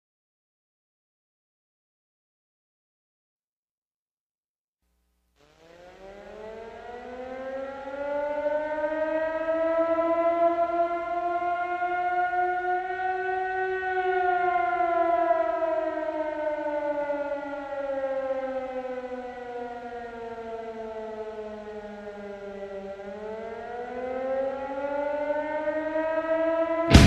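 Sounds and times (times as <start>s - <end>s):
siren-like wailing tone: 5.4s - 27.0s.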